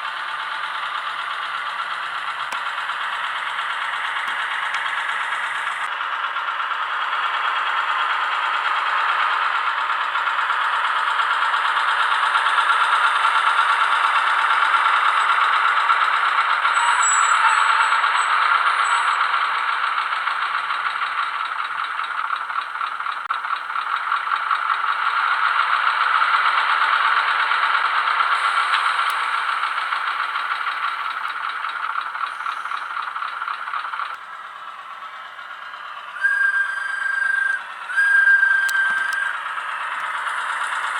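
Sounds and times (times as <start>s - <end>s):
model locomotive diesel chugging: 0.0s - 40.9s.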